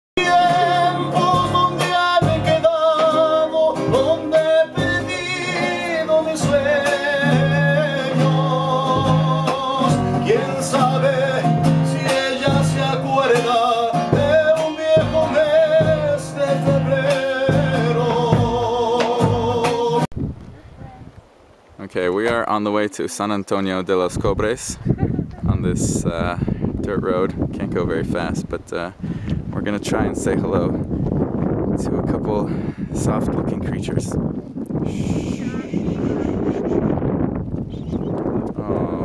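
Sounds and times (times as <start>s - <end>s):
person singing: 0.2s - 20.1s
strummed guitar: 0.2s - 20.1s.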